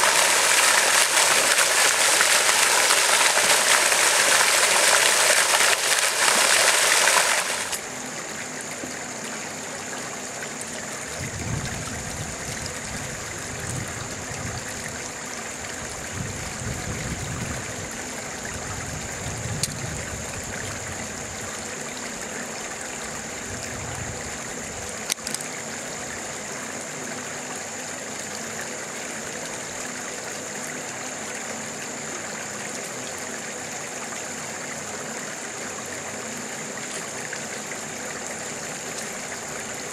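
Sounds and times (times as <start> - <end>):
stream running: 0.0 - 39.9.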